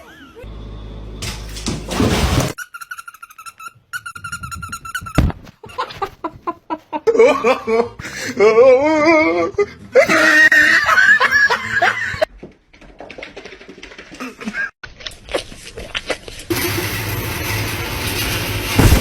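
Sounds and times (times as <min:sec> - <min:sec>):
person laughing: 0:05.6 - 0:12.3, 0:14.2 - 0:14.7.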